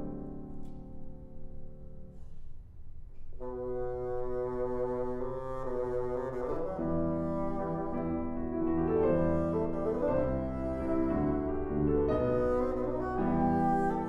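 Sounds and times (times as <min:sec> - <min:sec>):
sustained piano chords: 0:00.0 - 0:14.0
low bassoon notes: 0:03.4 - 0:14.0.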